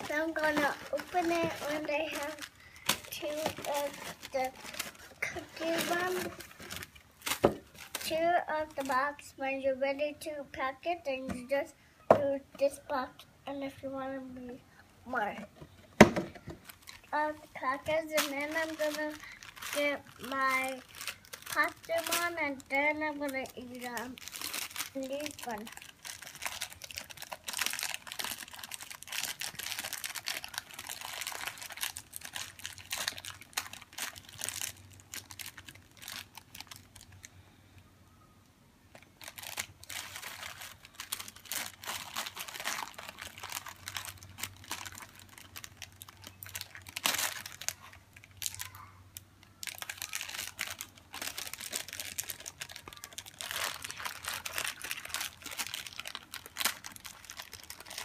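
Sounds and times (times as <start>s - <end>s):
cracker package crinkling: 0.0s - 9.0s, 15.6s - 37.3s, 38.9s - 58.0s.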